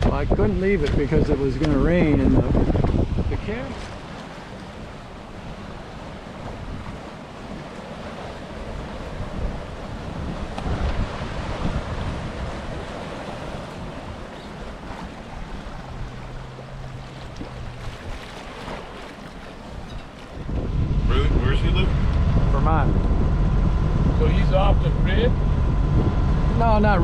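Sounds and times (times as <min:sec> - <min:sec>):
water rushing past hull: 0:00.0 - 0:27.0
wind buffeting microphone: 0:00.0 - 0:27.0.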